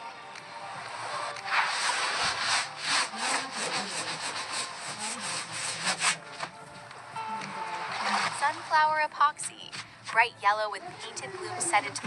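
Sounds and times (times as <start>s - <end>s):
hand tool scraping wood: 1.5s - 6.5s.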